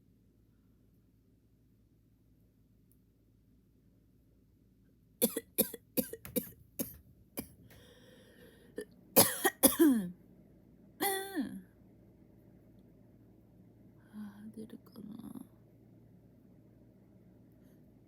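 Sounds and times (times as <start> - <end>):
person clearing throat: 5.2 - 7.6, 9.2 - 10.1, 11.0 - 11.6
person coughing: 5.2 - 7.6, 9.2 - 10.1, 11.0 - 11.6.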